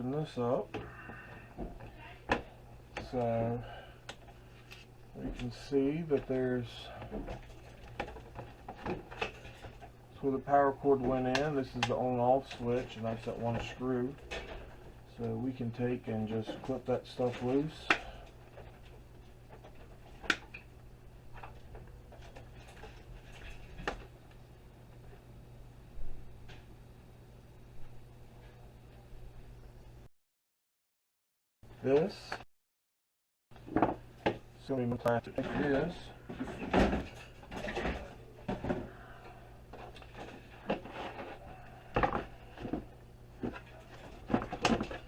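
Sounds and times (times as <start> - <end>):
steady low hum: 0.0 - 30.1, 33.6 - 45.0
handling noises: 33.6 - 45.0
plastic parts clacking and knocking: 42.0 - 45.0.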